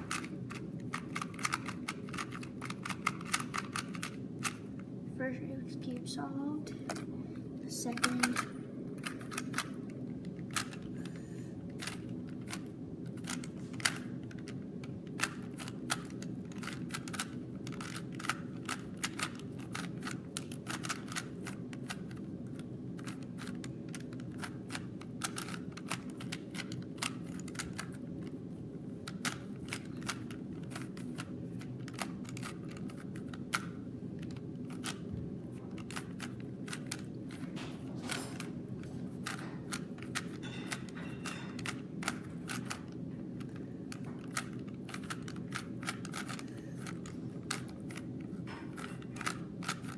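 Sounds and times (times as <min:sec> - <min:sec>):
steady low hum: 0:00.0 - 0:49.9
puzzle cube clicking: 0:00.1 - 0:04.6, 0:07.9 - 0:09.8, 0:11.8 - 0:28.0, 0:29.0 - 0:35.1, 0:35.8 - 0:37.5, 0:41.6 - 0:48.1, 0:48.8 - 0:49.9.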